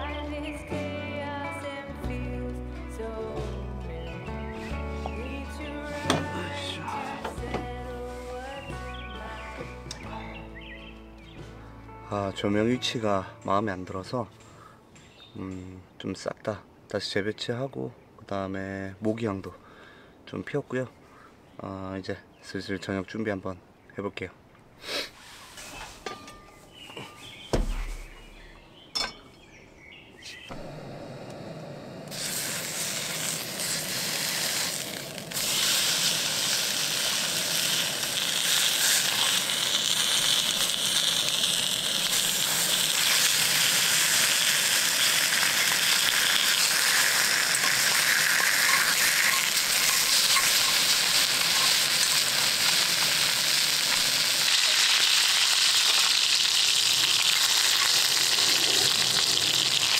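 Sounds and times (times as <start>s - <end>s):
pork sizzling in a pan: 32.1s - 59.9s.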